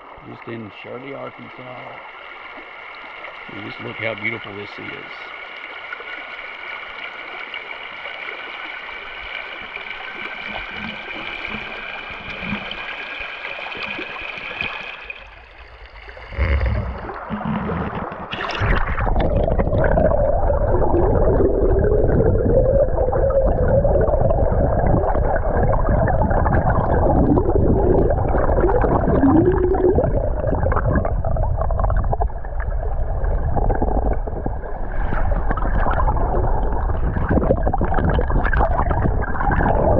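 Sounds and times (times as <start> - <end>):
wind on microphone: 15.6 - 29.7, 30.6 - 39.9.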